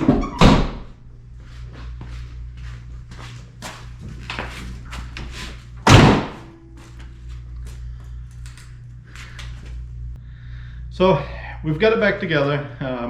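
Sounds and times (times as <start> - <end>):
steady low hum: 0.0 - 13.0
truck door slamming: 5.8 - 6.6.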